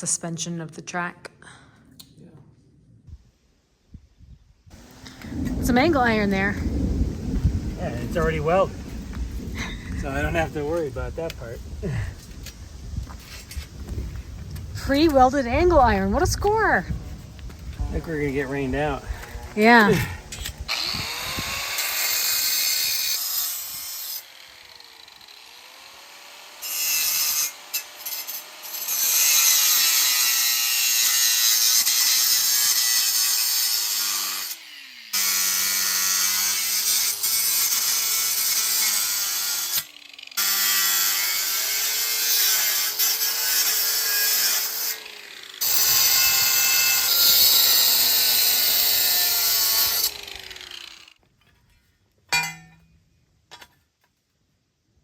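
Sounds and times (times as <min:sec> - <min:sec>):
power tool cutting steel: 0:18.0 - 0:51.2.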